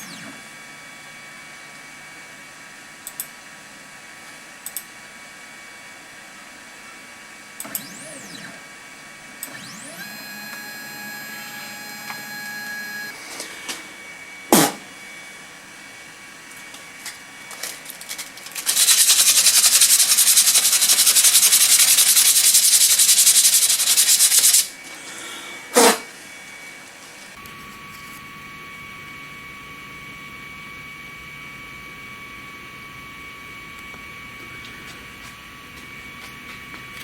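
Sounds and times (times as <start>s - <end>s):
cnc router motors whining: 0.0s - 1.5s, 7.6s - 16.9s, 25.7s - 37.0s
rasping hiss with rapid flutter: 18.6s - 24.7s.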